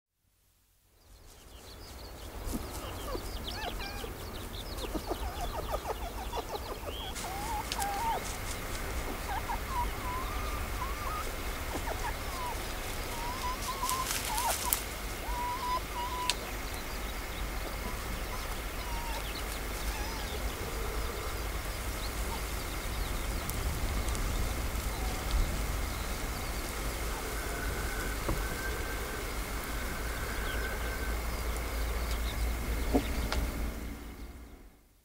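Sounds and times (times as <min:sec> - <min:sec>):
fox whining: 0:02.6 - 0:08.4, 0:09.0 - 0:16.5, 0:17.7 - 0:21.4, 0:26.9 - 0:32.2.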